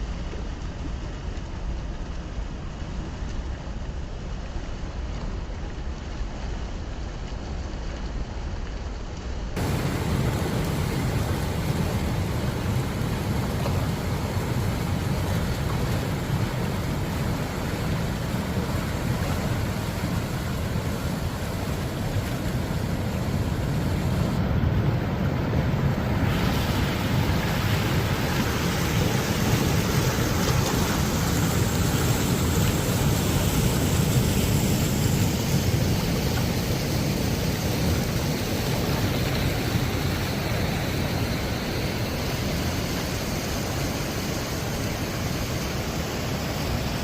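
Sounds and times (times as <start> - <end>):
floodwater rushing: 9.6 - 47.0.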